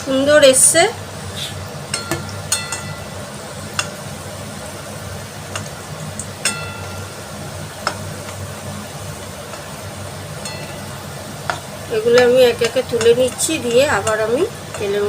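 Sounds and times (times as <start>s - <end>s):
food sizzling in hot oil: 0.0s - 15.0s
metal spoon clinking on pan: 1.9s - 3.2s, 6.4s - 8.4s, 10.4s - 15.0s.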